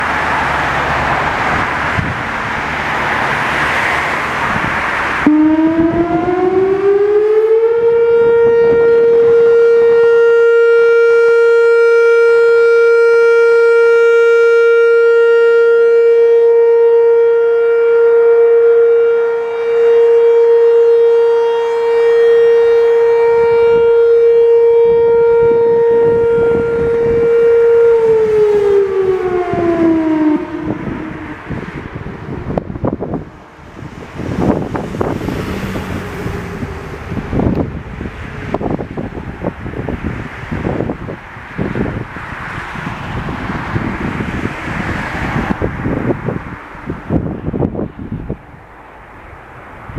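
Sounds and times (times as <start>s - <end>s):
loud rushing noise: 0.0s - 6.8s, 28.0s - 49.9s
rotating electronic warning siren: 0.0s - 48.7s.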